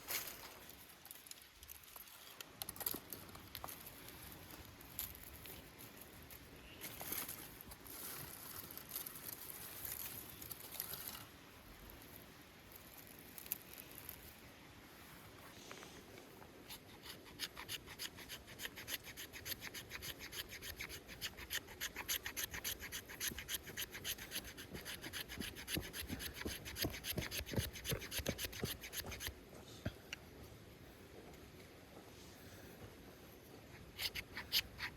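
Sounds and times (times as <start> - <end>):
hand saw cutting wood: 16.7 - 29.4, 33.9 - 34.9.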